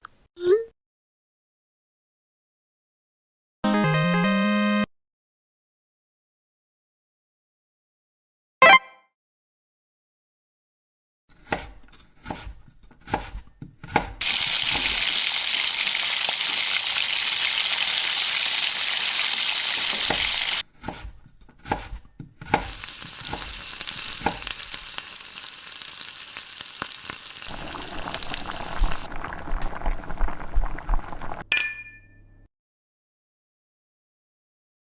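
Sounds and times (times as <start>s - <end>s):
vegetables sizzling in a pan: 14.2s - 20.6s, 22.6s - 31.4s.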